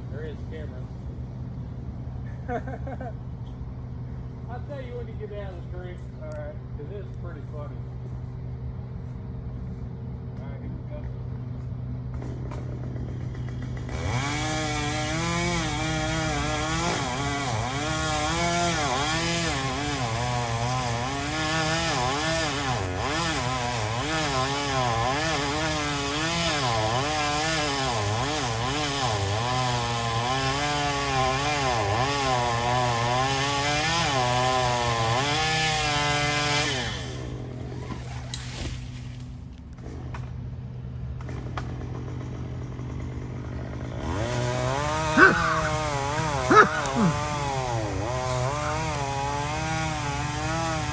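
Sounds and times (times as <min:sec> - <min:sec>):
chainsaw cutting wood: 0:12.1 - 0:39.0, 0:42.9 - 0:50.9
chainsaw idling: 0:13.2 - 0:37.8, 0:43.6 - 0:50.9.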